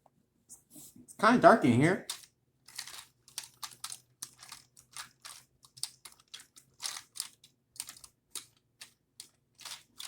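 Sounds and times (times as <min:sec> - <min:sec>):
rustling of plastic and cardboard: 0:02.0 - 0:10.0.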